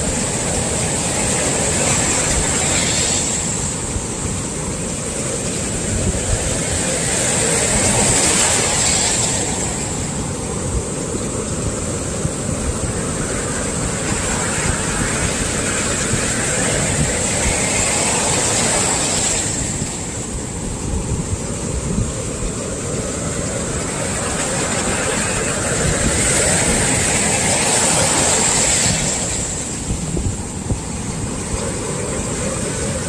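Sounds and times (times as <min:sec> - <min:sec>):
surf washing up the beach: 0:00.0 - 0:33.0.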